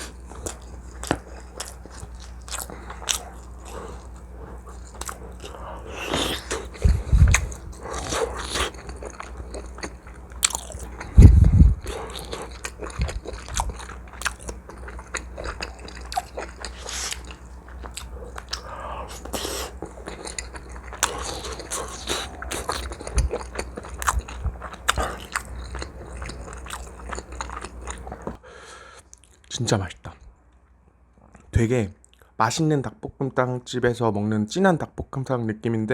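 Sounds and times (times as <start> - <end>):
close chewing and biting: 0.0 - 28.4.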